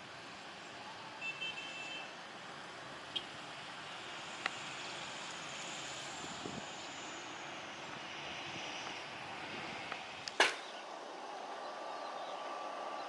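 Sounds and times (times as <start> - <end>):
distant jet engine rush: 0.0 - 13.0
sharp click: 10.2 - 10.7.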